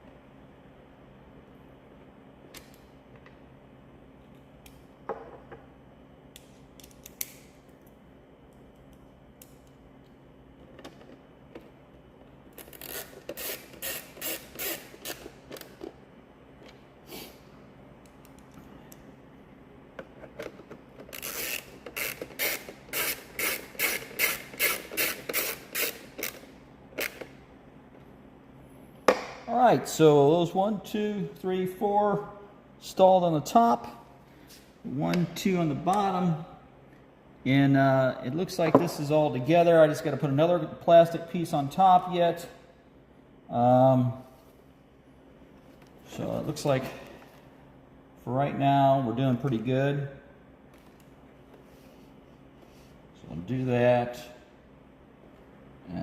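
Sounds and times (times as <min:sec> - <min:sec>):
screwdriver scraping turns: 0:12.6 - 0:15.7, 0:20.5 - 0:26.4.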